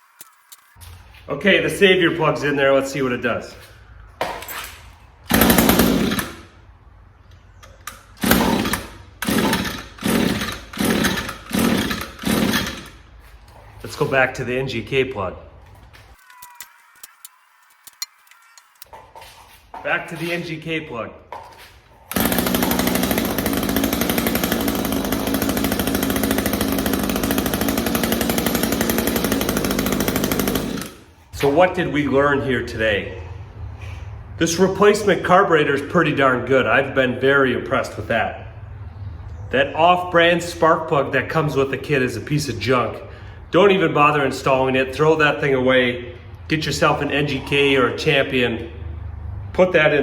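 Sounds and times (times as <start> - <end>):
trimmer engine pull-start cranking: 5.3 - 6.5, 7.8 - 13.1, 22.1 - 31.2.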